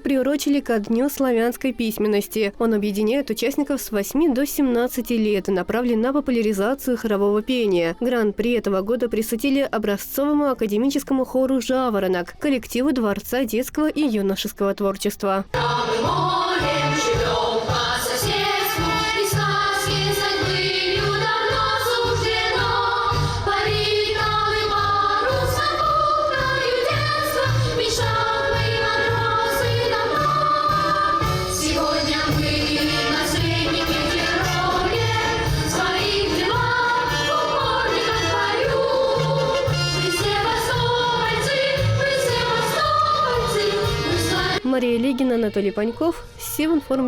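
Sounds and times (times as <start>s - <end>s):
children's choir singing: 15.5s - 47.0s
instrumental accompaniment with bass: 15.6s - 44.6s.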